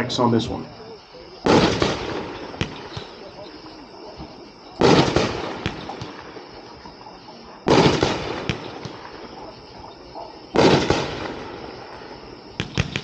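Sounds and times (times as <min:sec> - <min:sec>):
loud firework bursts: 0:00.0 - 0:13.0
small crackling pops: 0:02.6 - 0:03.2.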